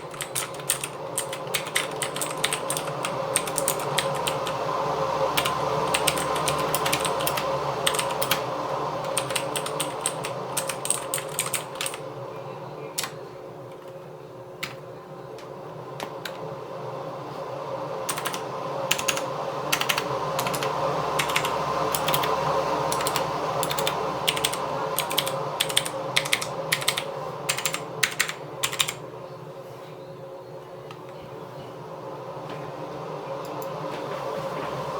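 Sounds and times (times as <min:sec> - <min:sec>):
mechanical keyboard typing: 0:00.0 - 0:04.6, 0:05.4 - 0:12.0, 0:13.0 - 0:13.9, 0:18.1 - 0:29.0
steady hum: 0:00.0 - 0:34.9.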